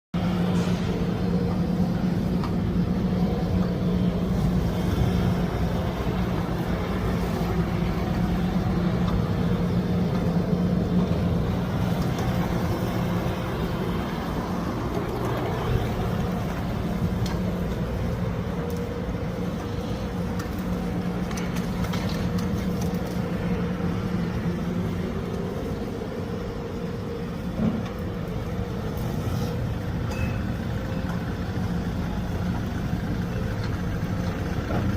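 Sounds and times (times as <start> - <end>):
street noise: 0.1 - 34.9
truck engine running: 0.2 - 34.9.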